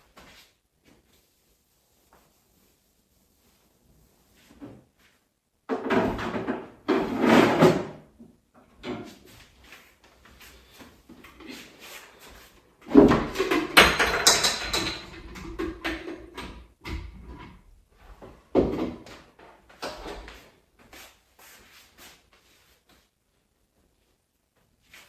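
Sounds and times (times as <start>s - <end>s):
objects knocking and clattering: 5.7s - 8.0s, 12.8s - 17.6s, 18.5s - 20.3s.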